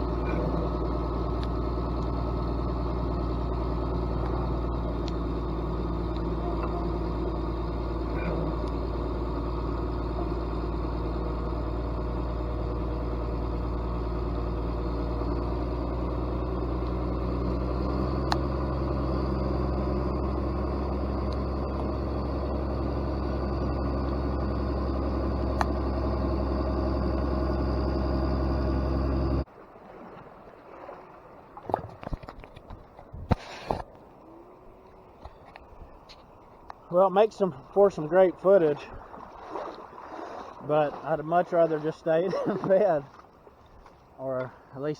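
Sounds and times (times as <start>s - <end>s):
diesel engine idling: 0.0s - 29.5s, 34.1s - 39.4s, 40.1s - 44.9s.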